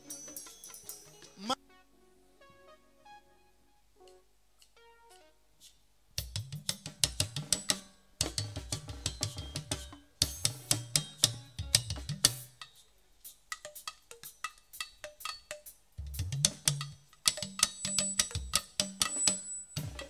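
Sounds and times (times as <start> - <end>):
drums and hand percussion: 0.0 - 1.6, 5.6 - 20.0.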